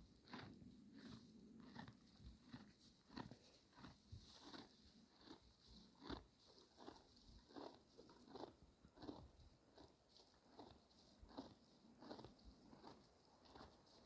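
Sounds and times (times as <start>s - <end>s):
ponies chewing hay: 0.1s - 14.0s.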